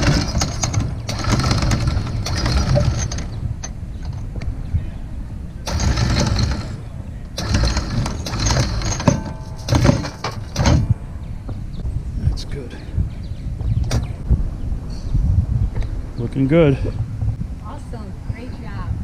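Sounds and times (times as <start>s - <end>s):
metal chain rattling: 0.0s - 4.3s, 5.7s - 6.8s, 7.4s - 11.1s
electric anchor windlass running: 0.0s - 12.4s, 13.0s - 14.6s.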